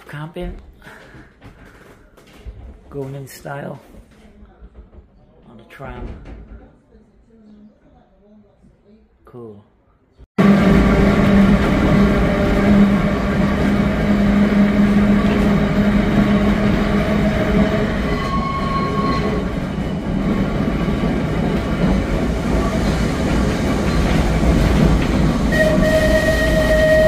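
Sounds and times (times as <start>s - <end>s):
tram rumbling on rails: 0.8s - 6.8s, 10.4s - 27.0s
long high tone: 25.5s - 27.0s.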